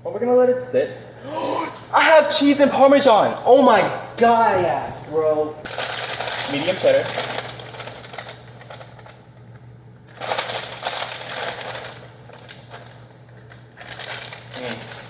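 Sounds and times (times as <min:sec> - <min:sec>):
steady low hum: 0:00.0 - 0:15.0
rustling: 0:04.5 - 0:09.2, 0:10.1 - 0:15.0.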